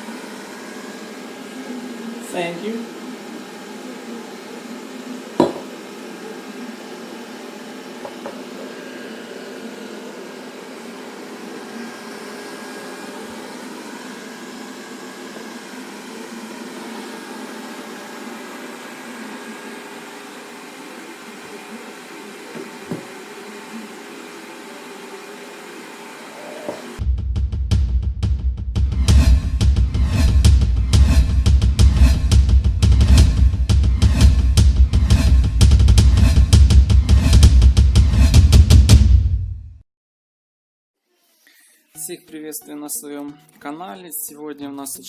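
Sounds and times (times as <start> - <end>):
robot vacuum motor hum: 0.0 - 27.0.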